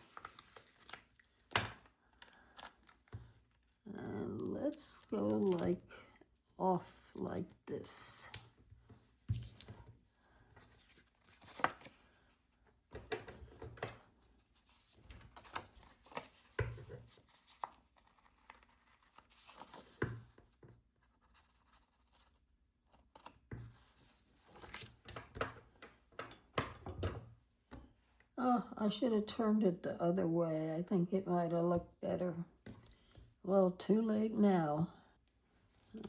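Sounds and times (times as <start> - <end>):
paper rustling: 8.8 - 12.3.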